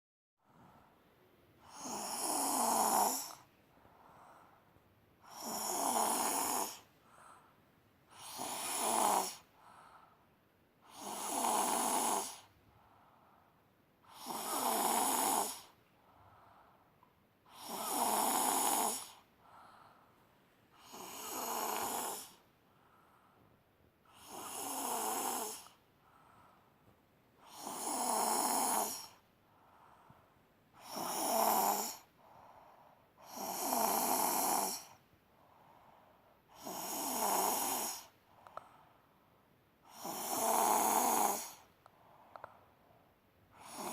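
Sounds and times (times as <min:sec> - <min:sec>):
faint breathing: 0:00.4 - 0:43.9
loud snoring: 0:01.6 - 0:03.5, 0:05.2 - 0:06.9, 0:08.1 - 0:09.5, 0:10.8 - 0:12.5, 0:14.0 - 0:15.8, 0:17.5 - 0:19.2, 0:20.8 - 0:22.4, 0:24.1 - 0:25.8, 0:27.4 - 0:29.2, 0:30.8 - 0:32.1, 0:33.2 - 0:35.0, 0:36.5 - 0:38.2, 0:39.9 - 0:41.7, 0:43.6 - 0:43.9.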